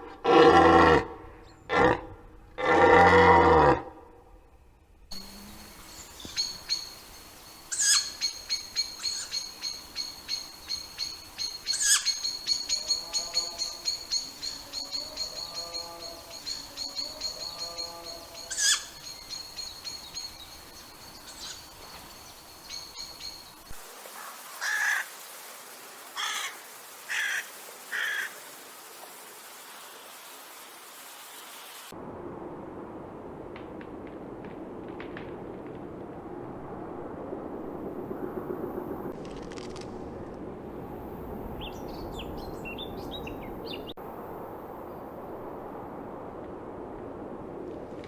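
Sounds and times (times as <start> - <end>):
high ticking bird trill: 5.2 - 21.8
short bird calls: 11.5 - 13.0.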